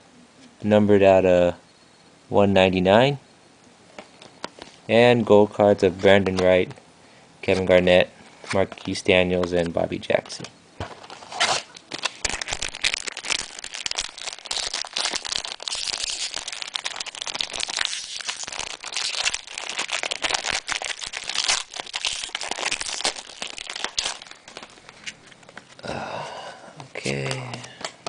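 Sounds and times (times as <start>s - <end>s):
card pack wrapper crinkling: 10.9s - 25.8s.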